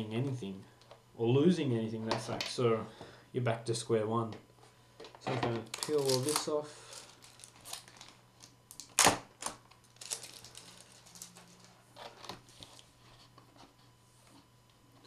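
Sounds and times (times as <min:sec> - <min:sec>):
plastic film peeling crackles: 0:05.6 - 0:12.9.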